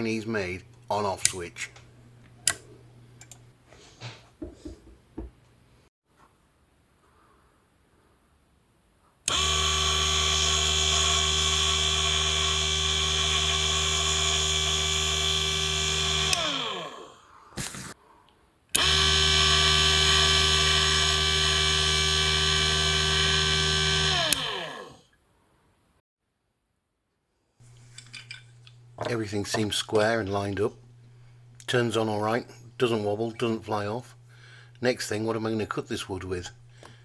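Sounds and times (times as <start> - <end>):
lathe motor whining: 9.3 - 17.2, 18.8 - 25.0.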